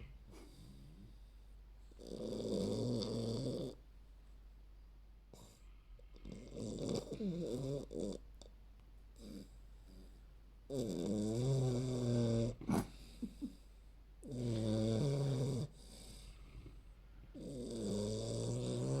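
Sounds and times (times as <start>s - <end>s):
puppy snoring loudly: 1.9s - 3.8s, 5.3s - 8.3s, 9.2s - 13.4s, 14.2s - 19.0s.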